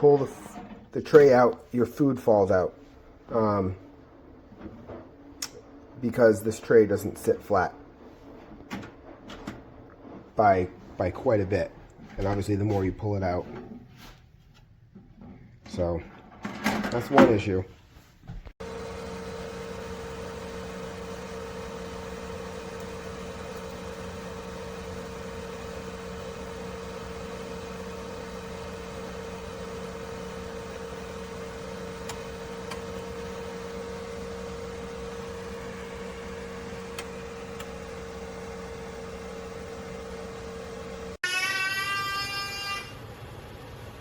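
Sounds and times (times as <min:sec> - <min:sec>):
convection fan humming: 0:18.6 - 0:41.2.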